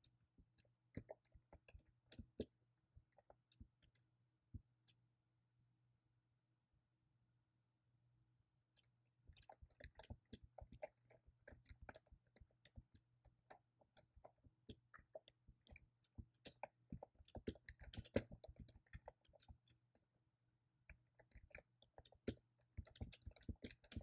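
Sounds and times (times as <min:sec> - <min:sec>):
typing on computer keyboard: 0:21.3 - 0:24.0.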